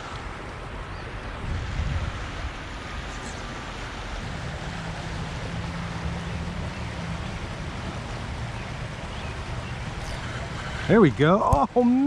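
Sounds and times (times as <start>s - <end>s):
wind noise on microphone: 0.0s - 6.8s
flowing creek water: 0.0s - 12.0s.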